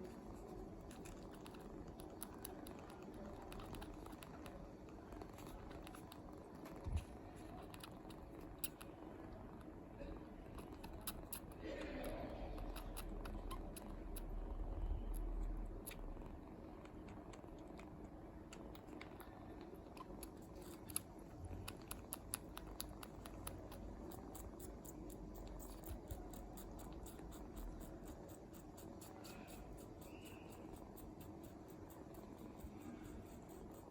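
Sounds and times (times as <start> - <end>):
kitten sucking wet clicking: 0.0 - 6.3, 7.5 - 9.0, 10.5 - 14.4, 15.1 - 33.9
faint low purr: 0.0 - 33.9.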